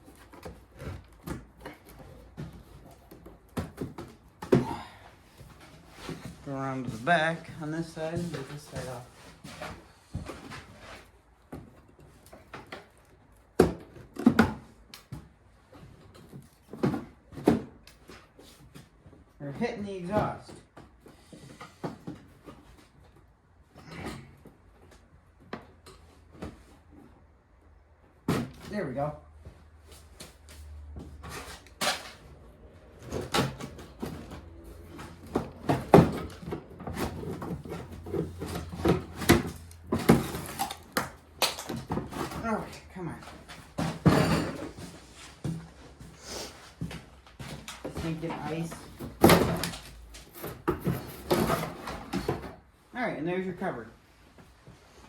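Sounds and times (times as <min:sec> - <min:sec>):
hand tools knocking and clunking: 0:31.0 - 0:45.7, 0:47.4 - 0:52.6.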